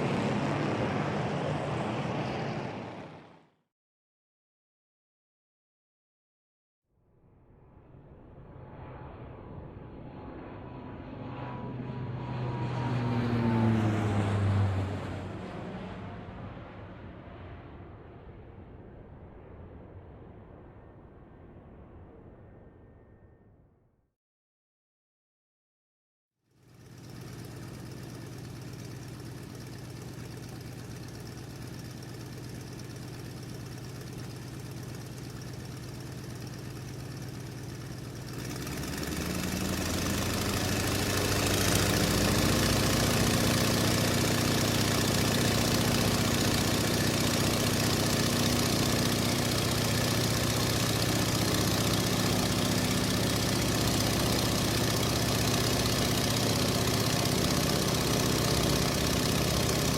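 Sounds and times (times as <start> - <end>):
car engine idling: 26.8 - 59.9.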